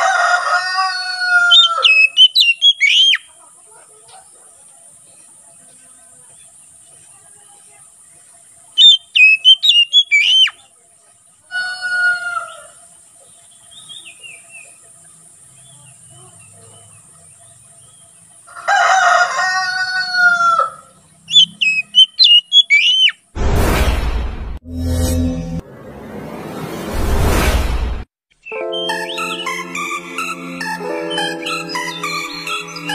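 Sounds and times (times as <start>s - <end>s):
rooster crowing: 0.0s - 2.1s, 11.5s - 12.8s, 18.5s - 21.0s
bird singing whistles: 1.8s - 3.2s, 8.8s - 10.6s, 21.3s - 23.2s.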